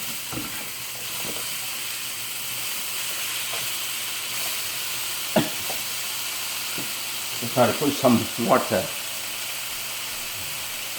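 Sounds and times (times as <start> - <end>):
vegetables sizzling in a wok: 0.0 - 10.9.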